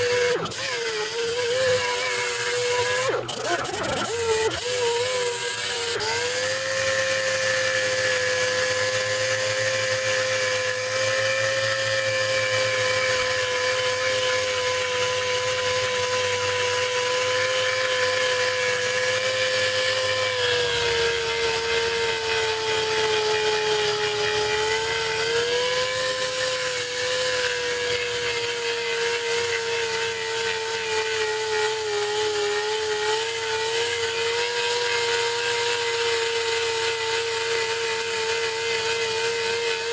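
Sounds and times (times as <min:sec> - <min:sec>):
electric power tool whining: 0:00.0 - 0:39.9.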